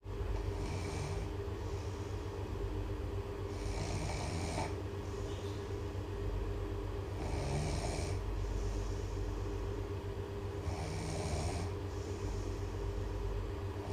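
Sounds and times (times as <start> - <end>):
steady low hum: 0.0 - 13.9
person snoring loudly: 0.5 - 1.3, 3.5 - 4.8, 7.2 - 8.2, 10.6 - 11.8.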